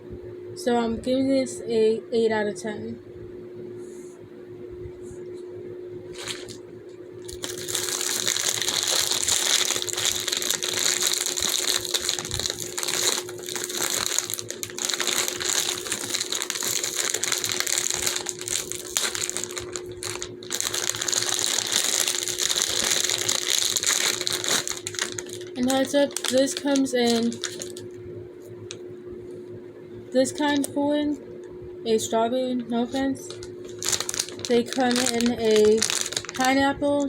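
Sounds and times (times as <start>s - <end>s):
steady low hum: 0.0s - 37.0s
crinkling and crunching: 6.1s - 6.6s, 7.2s - 27.9s, 32.9s - 37.0s.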